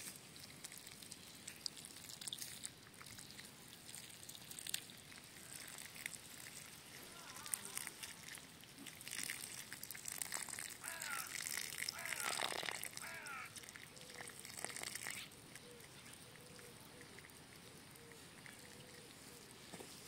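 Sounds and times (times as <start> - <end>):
water gushing and splashing: 0.0 - 15.2
short high calls: 10.8 - 13.6.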